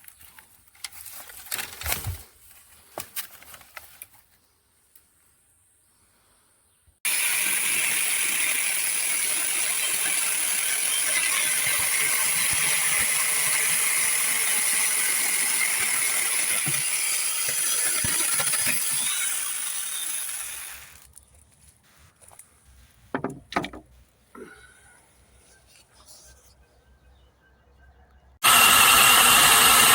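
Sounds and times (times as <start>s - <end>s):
electric chainsaw whining: 7.1s - 21.1s, 28.4s - 29.9s.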